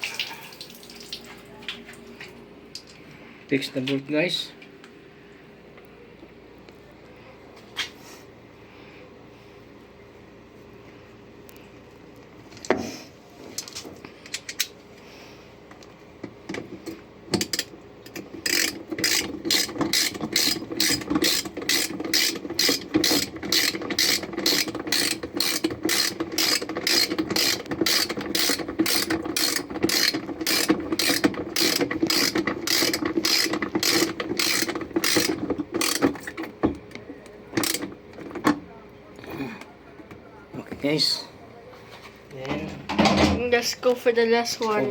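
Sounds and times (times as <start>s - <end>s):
ratchet wrench clicking: 17.4s - 36.2s, 37.6s - 37.9s.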